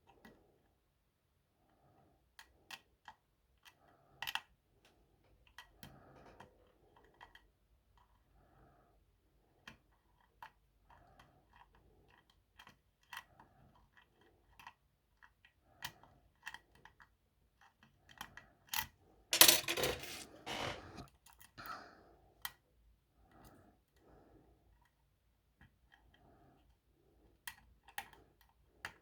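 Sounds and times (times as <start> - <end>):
lock pick clicking and scraping: 19.4 - 21.0.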